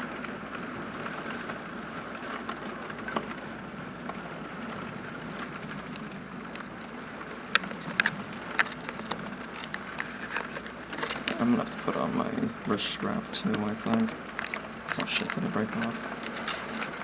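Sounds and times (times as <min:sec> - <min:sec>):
rain hissing: 0:00.0 - 0:17.0
sharp clicks: 0:07.4 - 0:17.0.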